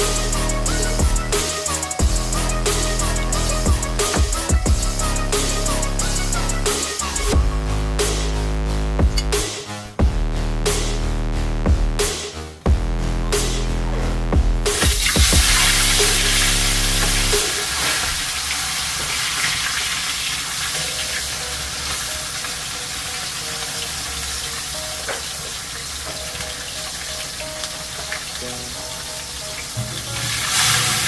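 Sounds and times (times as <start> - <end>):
music with heavy bass beat: 0.0 - 18.2
fish sizzling in hot oil: 14.9 - 31.0
faint melody: 20.8 - 31.0.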